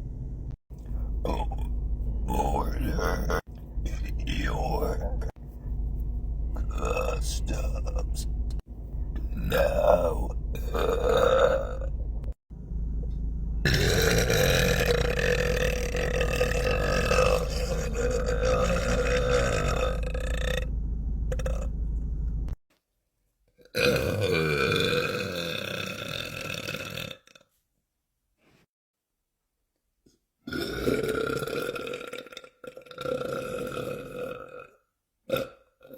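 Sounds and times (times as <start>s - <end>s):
man belching: 1.2s - 1.7s, 2.3s - 3.5s, 6.6s - 8.2s, 9.3s - 11.9s, 13.7s - 20.7s, 23.7s - 27.4s, 30.5s - 35.9s.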